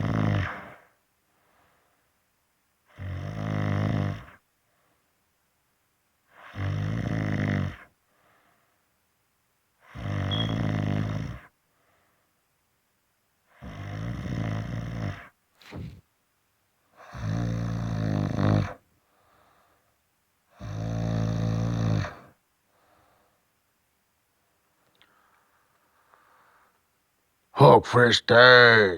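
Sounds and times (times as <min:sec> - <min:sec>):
long buzzing snores: 0:00.0 - 0:01.0, 0:02.9 - 0:04.4, 0:06.3 - 0:07.9, 0:09.8 - 0:11.5, 0:13.5 - 0:16.0, 0:17.0 - 0:18.8, 0:20.5 - 0:22.4
short snort: 0:00.0 - 0:01.0, 0:06.3 - 0:07.9, 0:09.8 - 0:11.5, 0:13.6 - 0:16.0, 0:17.0 - 0:18.8, 0:20.6 - 0:22.4
faint breaths: 0:00.0 - 0:02.3, 0:04.2 - 0:05.3, 0:07.8 - 0:09.0, 0:11.2 - 0:12.6, 0:18.6 - 0:20.7, 0:22.0 - 0:23.6, 0:24.8 - 0:27.0.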